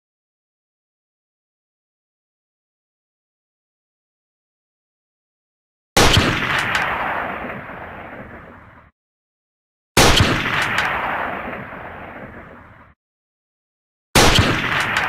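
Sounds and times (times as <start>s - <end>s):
rifle shots: 6.0s - 8.7s, 10.0s - 12.8s, 14.2s - 15.0s.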